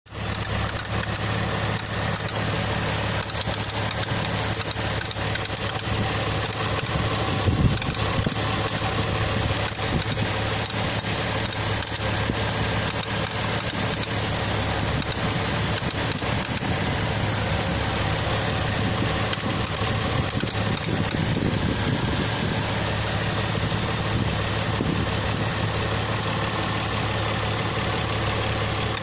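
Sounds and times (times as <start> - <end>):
car engine idling: 0.1 - 29.0
light ticks from engine: 0.2 - 2.4, 3.2 - 8.9, 9.6 - 12.2, 12.8 - 14.2, 15.0 - 16.7, 19.2 - 21.5, 26.1 - 26.6, 28.3 - 29.0.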